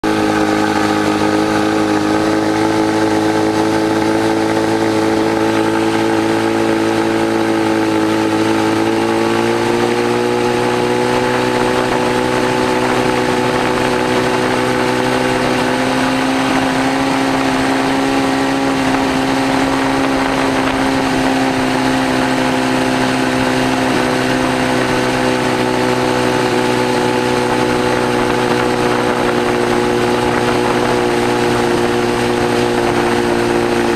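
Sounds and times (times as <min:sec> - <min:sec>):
engine running and sputtering: 0:00.0 - 0:33.9.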